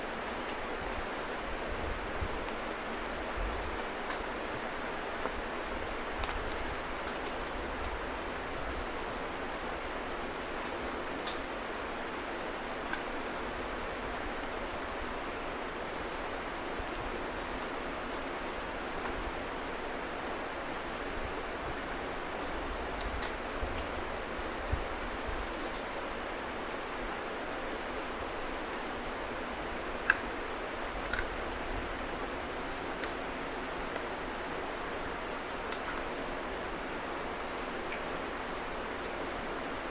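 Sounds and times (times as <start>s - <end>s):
bird chirping: 7.9s - 8.1s.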